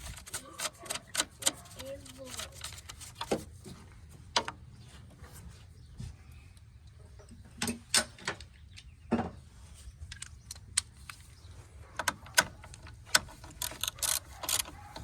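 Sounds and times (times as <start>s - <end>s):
ratchet clicking: 12.4s - 15.0s.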